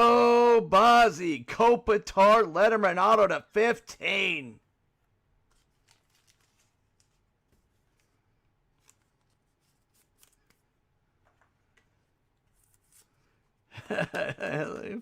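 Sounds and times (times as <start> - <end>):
trading cards ticking and rustling: 5.5 - 10.7.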